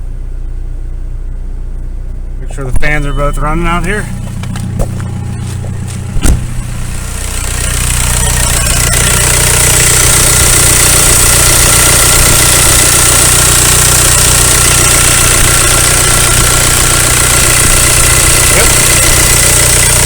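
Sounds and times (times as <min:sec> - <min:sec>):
car engine idling: 0:00.0 - 0:20.0
radiator fans rushing air: 0:03.6 - 0:07.0.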